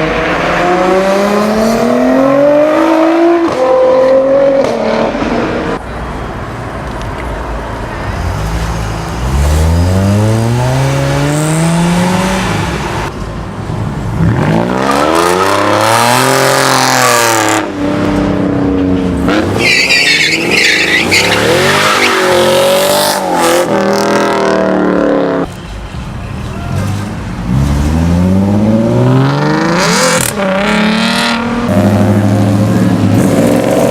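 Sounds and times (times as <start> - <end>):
car engines revving: 0.0 - 5.8, 6.9 - 33.9
tyre squeal: 19.3 - 22.5.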